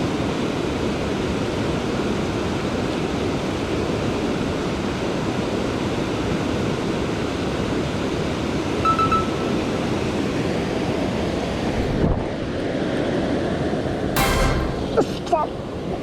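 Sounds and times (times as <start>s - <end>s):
high two-note chirp: 14.2s - 15.2s.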